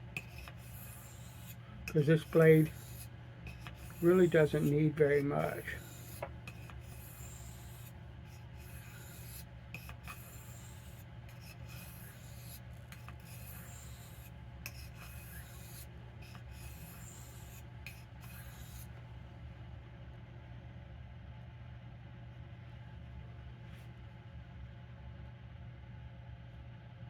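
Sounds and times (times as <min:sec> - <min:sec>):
knife scraping on whetstone: 0:00.2 - 0:18.9.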